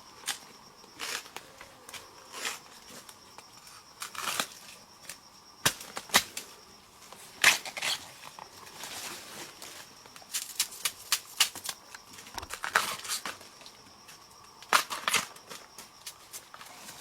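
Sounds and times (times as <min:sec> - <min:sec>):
high insect drone: 0:00.0 - 0:17.0
crunching and rustling: 0:07.1 - 0:17.0.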